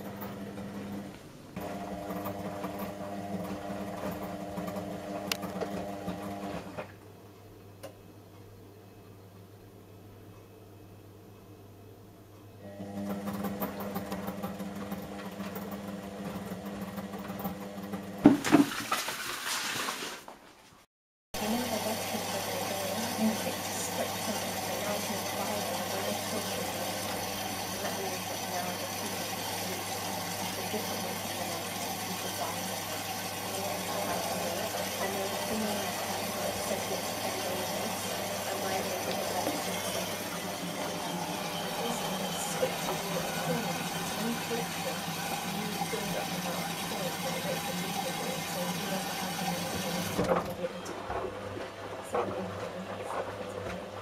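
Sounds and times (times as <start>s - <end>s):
washing machine motor humming: 0.0s - 10.4s, 11.3s - 20.1s, 21.4s - 54.0s
washing machine clunk: 13.1s - 19.1s, 48.4s - 51.4s.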